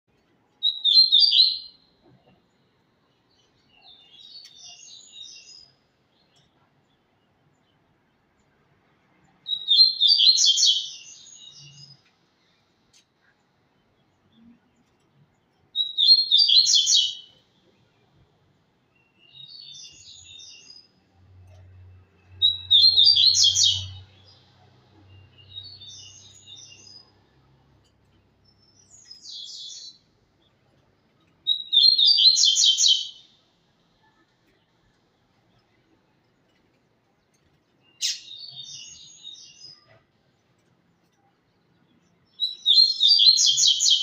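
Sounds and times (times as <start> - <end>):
bird singing bright phrases: 0.2 - 44.0.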